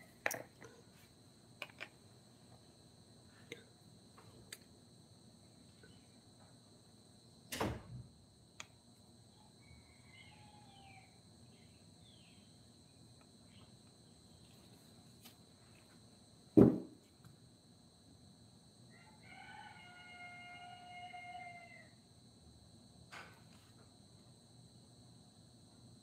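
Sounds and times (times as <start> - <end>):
high insect drone: 0.0 - 26.0
long held animal call: 9.4 - 11.2, 19.0 - 22.0
sharp knocks: 16.6 - 17.0.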